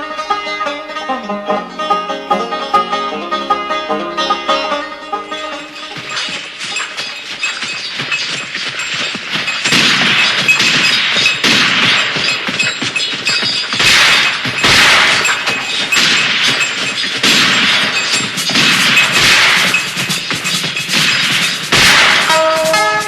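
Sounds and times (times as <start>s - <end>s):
crash and impact sound effects: 5.7s - 22.9s.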